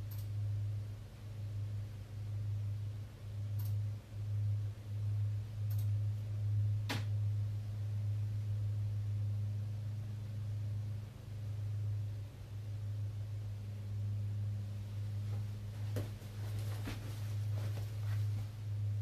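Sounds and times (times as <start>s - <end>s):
steady low hum: 0.0s - 19.0s
short clicks: 5.7s - 5.9s.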